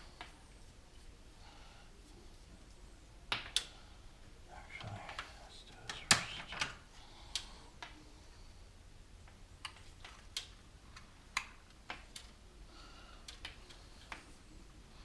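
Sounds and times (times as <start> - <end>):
light clicks and taps of parts: 9.2 - 12.4, 13.2 - 14.5.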